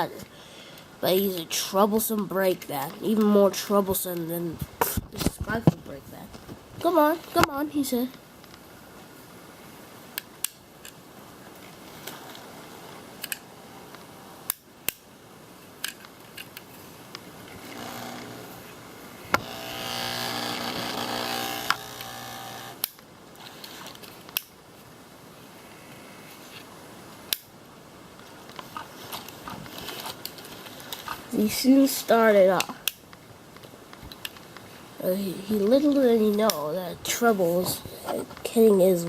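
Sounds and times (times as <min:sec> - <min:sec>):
small electric motor whirring: 0:17.5 - 0:18.7, 0:19.3 - 0:22.9.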